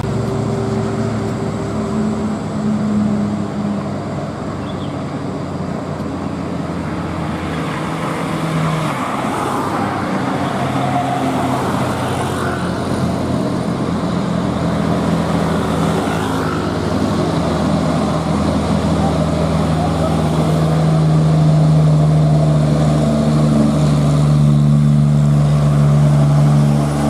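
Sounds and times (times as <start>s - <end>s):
road traffic noise: 0.0s - 27.0s
truck engine running: 12.6s - 27.0s.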